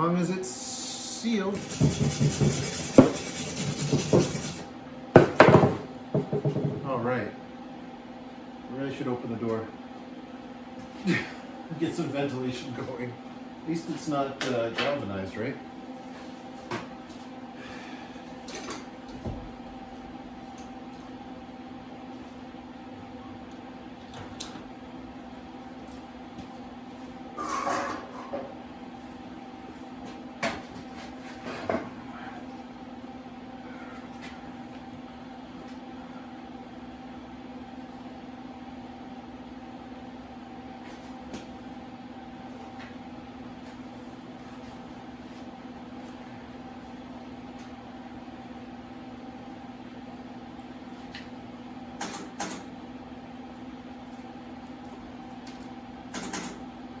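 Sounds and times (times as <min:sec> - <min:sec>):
steady mechanical hum: 0:00.0 - 0:57.0.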